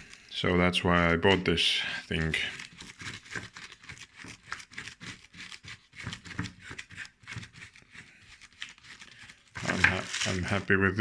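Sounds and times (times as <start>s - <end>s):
packaging rustling and crinkling: 8.3s - 11.0s.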